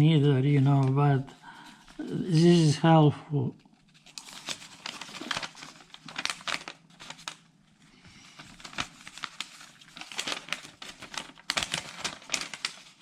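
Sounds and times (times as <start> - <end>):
packaging paper crinkling: 3.6 - 13.0.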